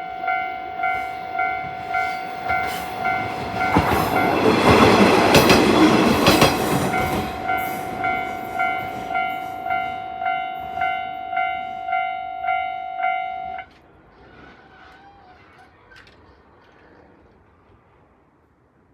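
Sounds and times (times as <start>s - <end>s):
level-crossing bell dinging: 0.0s - 13.7s
train passing: 0.0s - 18.9s.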